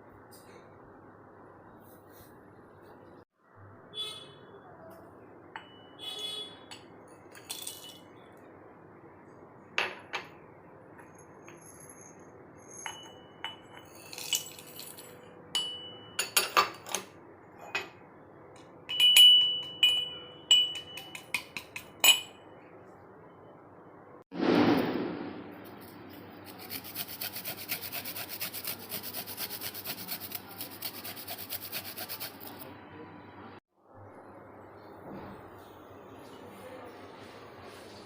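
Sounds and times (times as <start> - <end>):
kitchen utensils clinking: 6.7 - 8.1, 12.7 - 18.0, 18.9 - 22.4.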